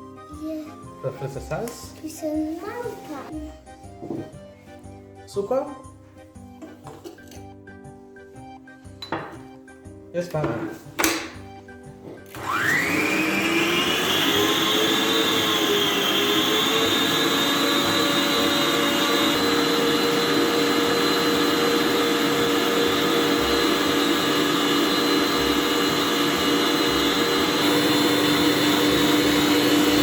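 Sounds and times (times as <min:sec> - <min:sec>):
electric mixer whining: 0:12.3 - 0:30.0.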